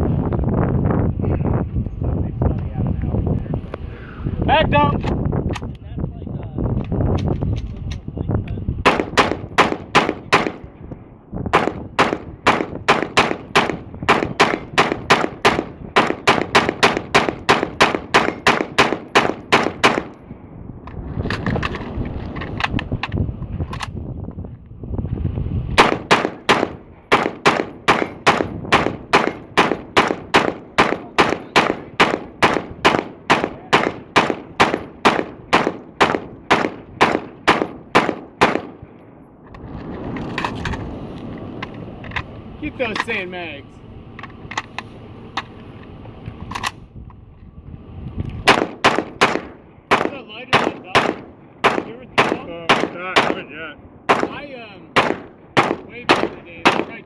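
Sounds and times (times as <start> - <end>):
rifle firing rapid shots: 8.8 - 10.7, 11.5 - 20.2, 25.8 - 38.8, 48.5 - 53.5, 54.1 - 57.0.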